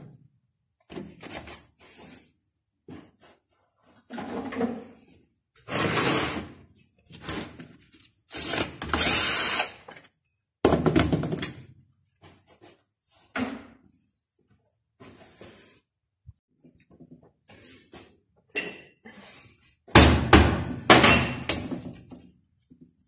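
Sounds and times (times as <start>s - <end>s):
handheld power tool bursts: 8.3s - 9.9s.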